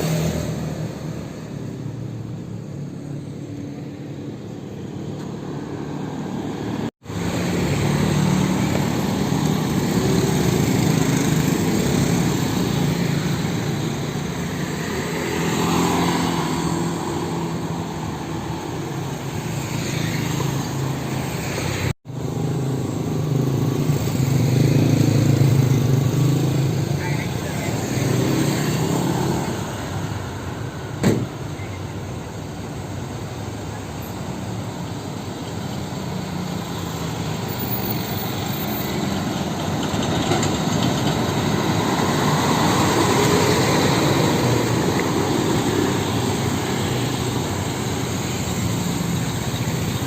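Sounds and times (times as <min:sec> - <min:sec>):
truck engines running: 0:00.0 - 0:50.0
vehicles passing: 0:00.0 - 0:50.0.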